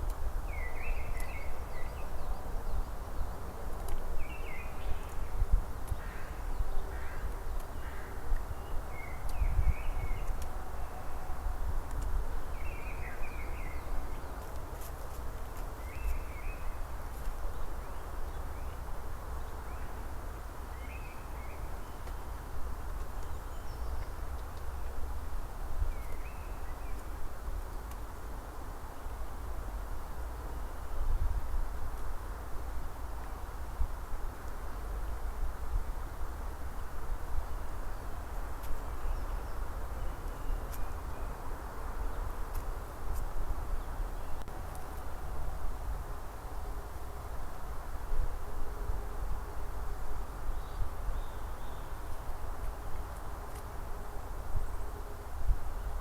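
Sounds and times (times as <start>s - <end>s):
faint ticks: 26.9s - 28.2s.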